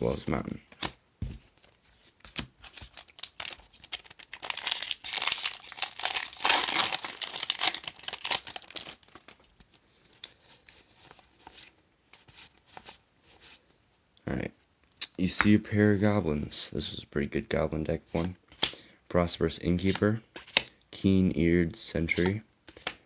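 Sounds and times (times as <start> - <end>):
cards being handled: 0.0 - 13.6, 19.8 - 20.7, 22.1 - 23.0
foil wrapper crinkling: 2.6 - 10.3.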